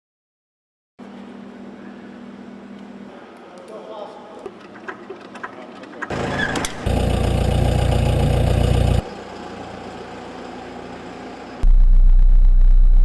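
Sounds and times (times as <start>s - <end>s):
helicopter turbine and rotor: 6.1s - 11.6s.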